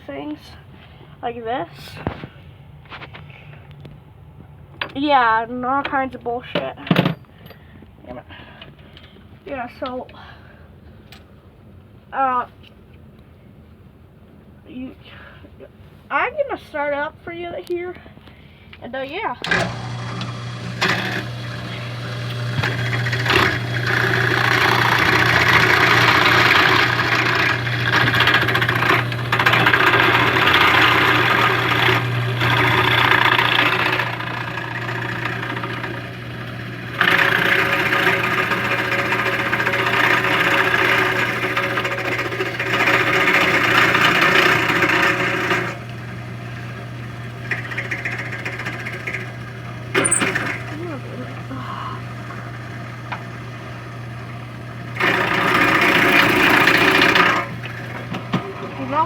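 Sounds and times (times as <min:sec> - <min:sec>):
drill press motor humming: 0:19.4 - 0:59.0
end mill cutting chatter: 0:19.4 - 0:59.0.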